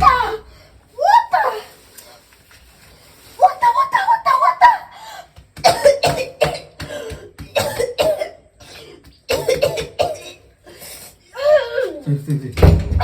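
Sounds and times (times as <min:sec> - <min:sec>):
person coughing hard: 0:05.6 - 0:10.5.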